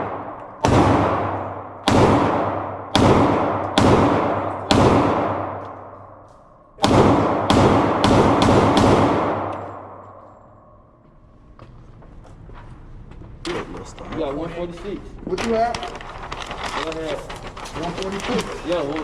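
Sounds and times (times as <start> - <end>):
gunshots echoing indoors: 0.0 - 11.4.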